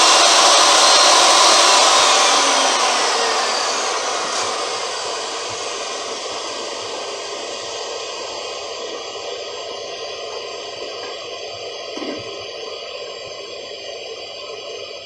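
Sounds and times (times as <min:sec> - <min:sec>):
power tool motor spinning down: 0:00.0 - 0:07.8, 0:11.9 - 0:12.7.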